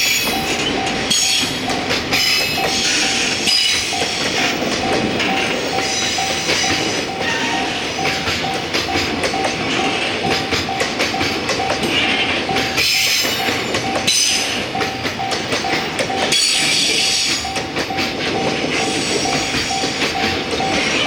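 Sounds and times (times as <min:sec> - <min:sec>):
train wheels clacking over rail joints: 0:00.0 - 0:21.0
high wheel squeal: 0:02.2 - 0:08.2.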